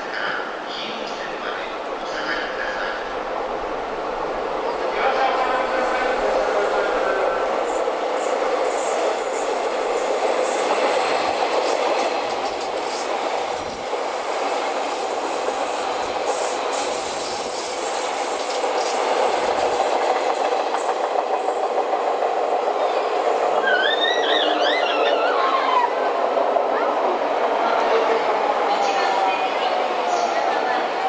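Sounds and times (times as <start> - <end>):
electric train rumbling past: 0.0 - 31.0.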